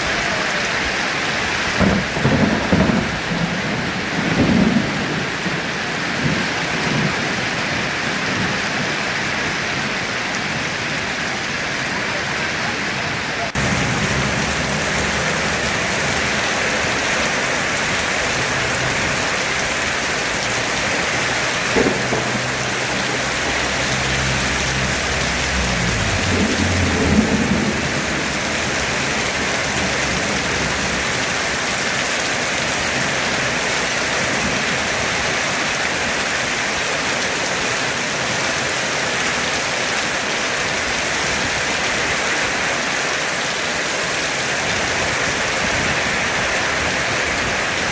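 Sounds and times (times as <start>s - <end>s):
heavy rain pouring: 0.0s - 47.9s
thunder rumbling: 1.5s - 9.2s, 13.5s - 35.5s
thunder crack: 1.7s - 7.3s, 13.5s - 31.8s.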